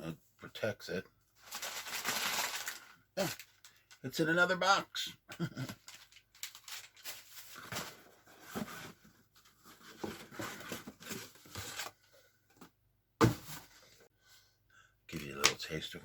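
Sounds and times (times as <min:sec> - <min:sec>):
paper and cardboard rustling: 0:05.7 - 0:12.1.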